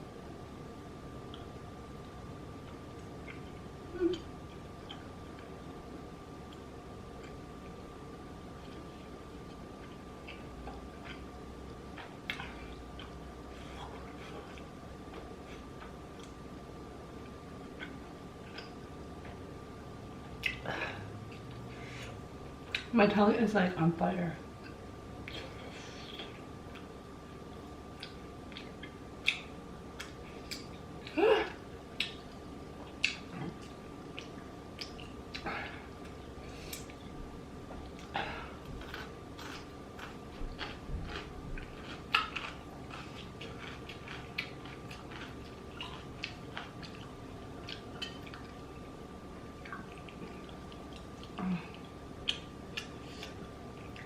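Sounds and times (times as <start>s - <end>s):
faint high hum: 0.0s - 54.0s
mouth clicks and smacks chewing: 27.9s - 31.1s, 32.0s - 35.5s, 38.8s - 48.6s, 49.6s - 54.0s.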